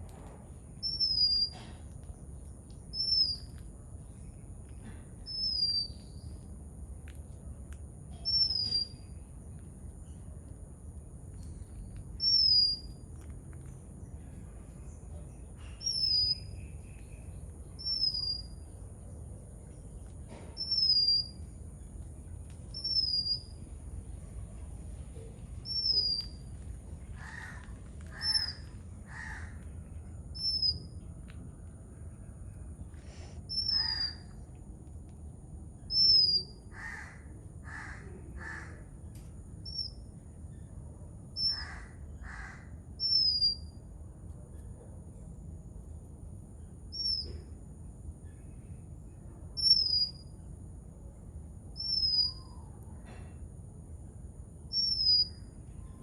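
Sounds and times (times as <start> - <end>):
crows cawing: 27.1 - 29.7, 36.7 - 38.9, 41.5 - 42.8.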